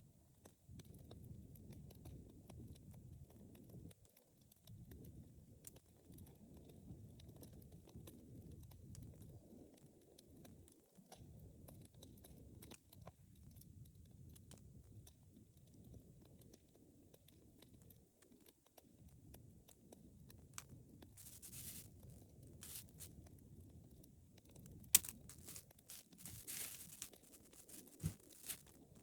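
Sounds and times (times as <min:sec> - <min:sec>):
fire crackling: 0:20.6 - 0:23.2, 0:24.5 - 0:29.0
sharp pop of burning wood: 0:24.9 - 0:25.6.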